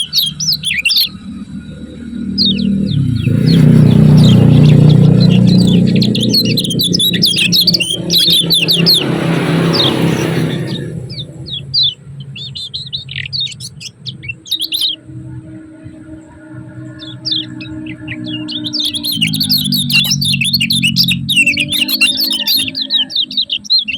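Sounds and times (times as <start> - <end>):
birds chirping rapidly: 0.0 - 23.9
faint steady tones: 0.0 - 23.9
low rumble: 1.1 - 12.8.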